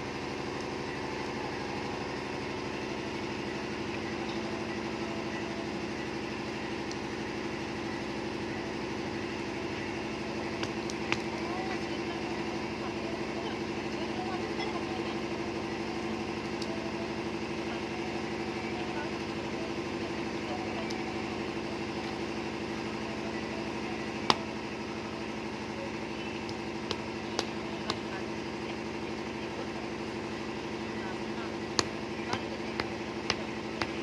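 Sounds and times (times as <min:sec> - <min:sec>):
mechanical hum: 0:00.0 - 0:34.0.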